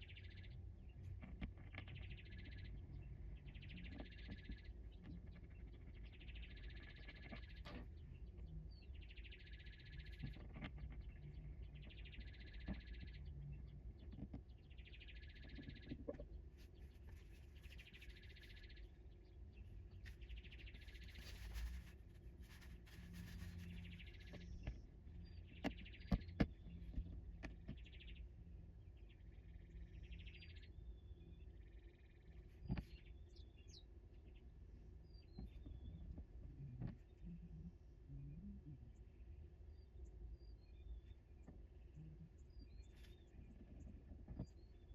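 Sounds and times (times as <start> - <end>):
faint low rumble: 0.0 - 44.9
birds chirping: 8.8 - 28.3.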